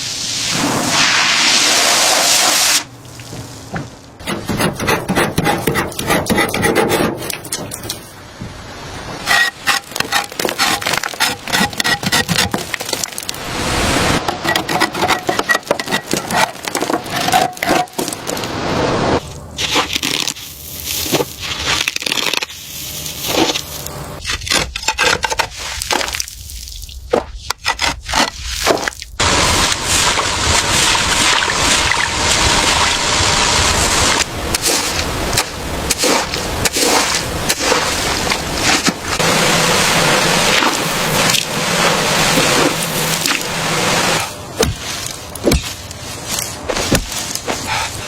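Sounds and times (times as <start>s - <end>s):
rasping scrape: 4.2s - 8.0s, 9.2s - 13.2s, 14.2s - 18.5s, 34.5s - 39.3s, 40.4s - 48.0s
sharp cracks and knocks: 44.6s - 47.7s.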